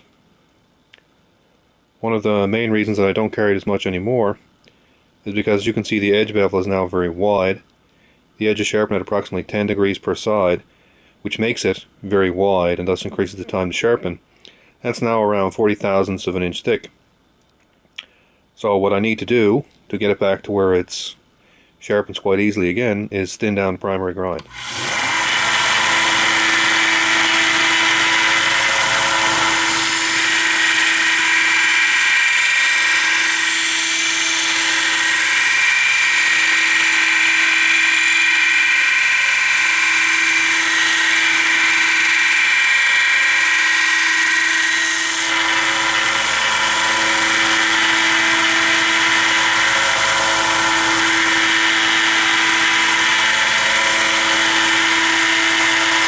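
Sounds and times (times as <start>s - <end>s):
belt grinder motor hum: 24.4s - 56.0s.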